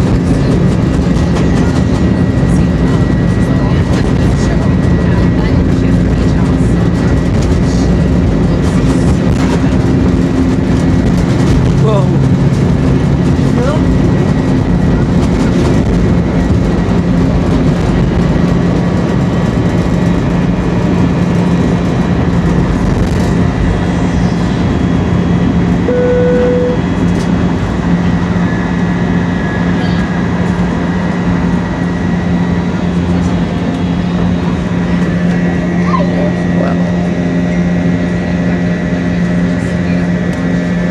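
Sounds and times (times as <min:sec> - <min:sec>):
airliner cabin engine noise: 0:00.0 - 0:40.9
short steady tone: 0:25.9 - 0:26.8.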